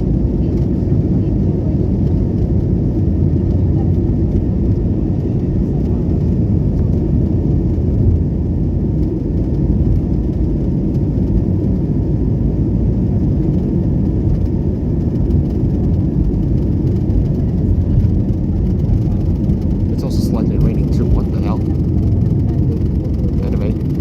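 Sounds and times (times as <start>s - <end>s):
jet engines rumbling: 0.0s - 24.0s.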